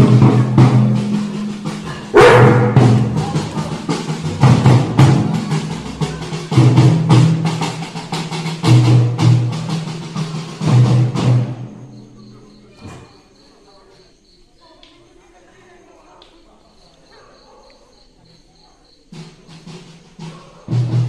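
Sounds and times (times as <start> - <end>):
music with regular drum beat: 0.0 - 13.6, 18.0 - 21.0.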